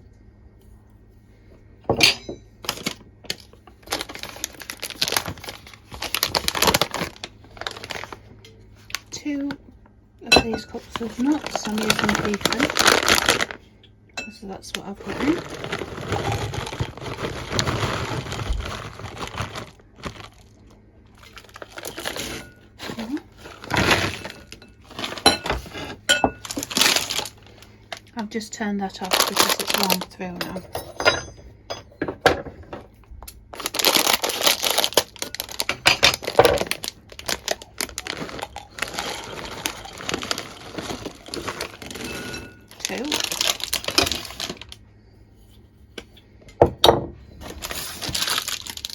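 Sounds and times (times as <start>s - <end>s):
packet rustling and crinkling: 2.6s - 9.2s, 10.4s - 13.6s, 14.5s - 28.1s, 28.9s - 30.2s, 33.4s - 44.8s, 47.4s - 48.9s.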